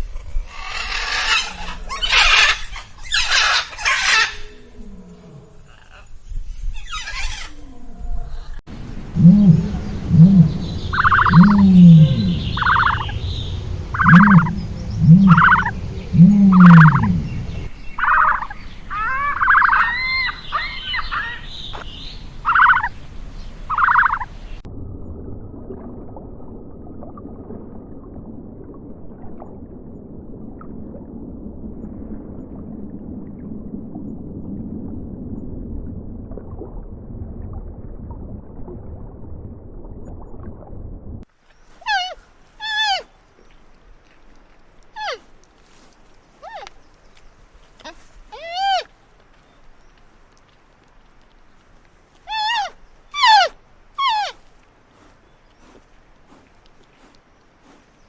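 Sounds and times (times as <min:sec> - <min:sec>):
steady low noise: 0:08.7 - 0:19.0, 0:21.5 - 0:41.2
higher chirping: 0:09.2 - 0:22.9
loud short animal calls: 0:41.8 - 0:43.1, 0:45.0 - 0:45.3, 0:46.4 - 0:46.7, 0:47.8 - 0:48.9, 0:52.3 - 0:54.4.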